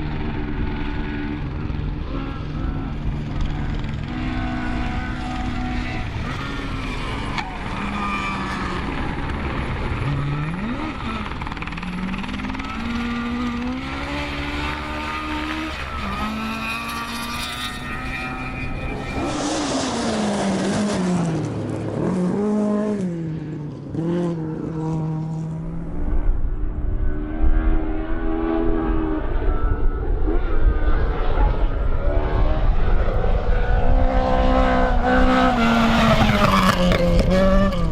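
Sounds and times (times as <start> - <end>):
rally car engine revving hard: 4.0 - 21.4, 30.2 - 37.9.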